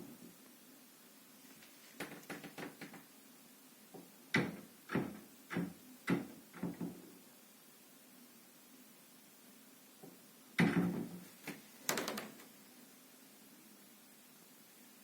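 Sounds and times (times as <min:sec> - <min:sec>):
wardrobe door knocking on frame: 0:04.0 - 0:07.0.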